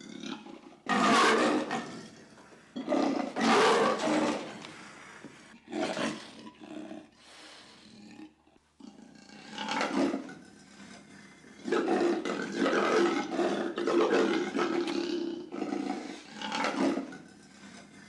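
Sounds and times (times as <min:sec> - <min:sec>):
cartoon dogs roaring and growling: 0:00.0 - 0:02.1, 0:02.8 - 0:04.7, 0:08.1 - 0:17.9.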